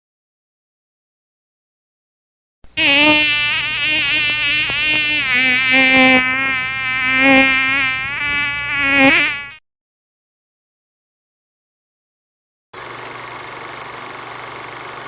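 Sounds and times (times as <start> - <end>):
flying insect buzzing: 2.8 - 9.6.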